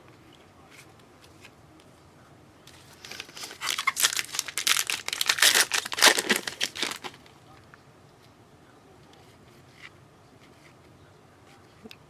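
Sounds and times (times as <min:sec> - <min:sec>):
foil wrapper crinkling and tearing: 0:02.7 - 0:07.3.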